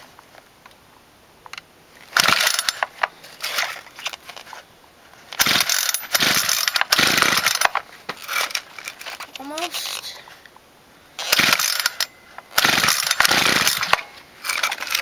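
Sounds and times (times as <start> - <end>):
engine pull-starter ratcheting: 2.1 - 4.4, 5.3 - 9.3, 11.2 - 15.0.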